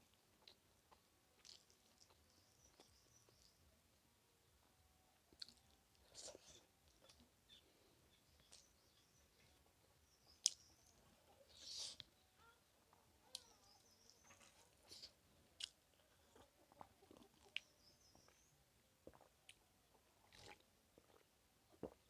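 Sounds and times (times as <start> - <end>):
soft chewing: 0.0 - 3.7, 4.4 - 22.0
crunchy slurping rustle: 11.4 - 12.1.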